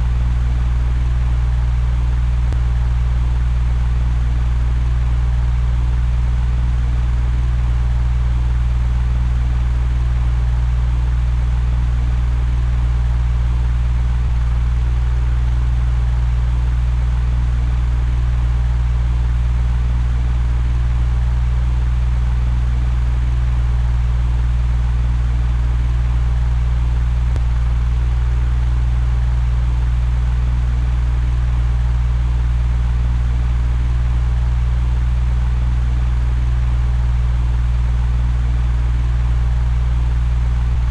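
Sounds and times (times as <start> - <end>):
low electric hum: 0.0 - 40.9
fan air rushing: 40.3 - 40.9.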